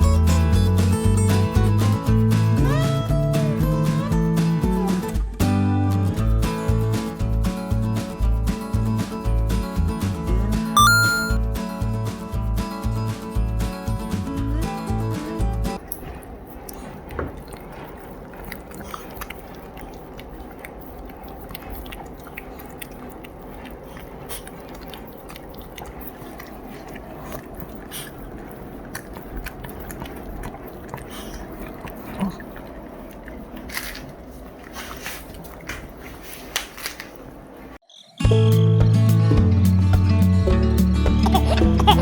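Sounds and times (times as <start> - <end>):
dog chewing hard treat: 15.8 - 37.3
teeth crunching on candy: 17.4 - 34.3.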